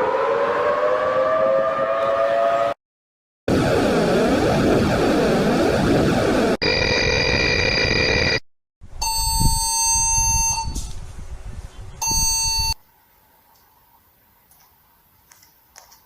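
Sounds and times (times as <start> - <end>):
rumbling static: 3.5 - 8.4
lower steady alert tone: 9.0 - 10.8
high steady alarm tone: 12.0 - 12.8.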